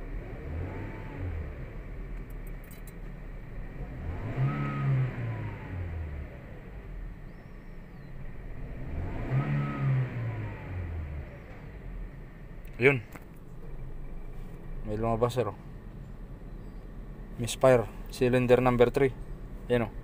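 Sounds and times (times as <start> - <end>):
car engine revving: 0.0 - 2.8, 3.4 - 14.9.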